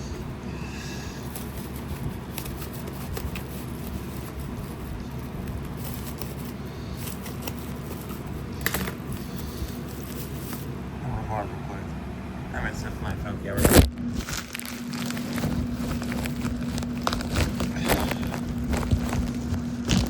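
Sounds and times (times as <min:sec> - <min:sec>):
steady low hum: 0:00.0 - 0:20.0
cardboard boxes being handled: 0:14.2 - 0:20.0.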